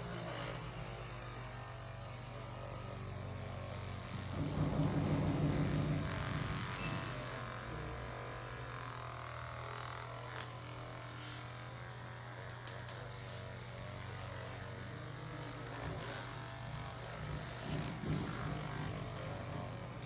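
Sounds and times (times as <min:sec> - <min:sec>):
steady low hum: 0:00.0 - 0:20.0
quick sharp clicks: 0:12.5 - 0:13.0.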